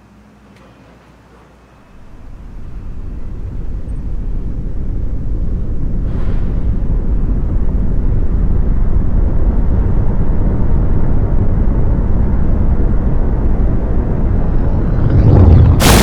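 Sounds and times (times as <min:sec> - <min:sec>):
deep rumbling roar: 0:13.6 - 0:16.0.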